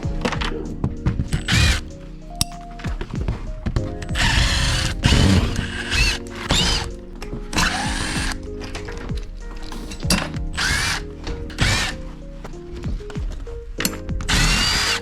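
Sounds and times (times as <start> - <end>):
power drill whining: 10.6 - 12.0, 14.3 - 15.0.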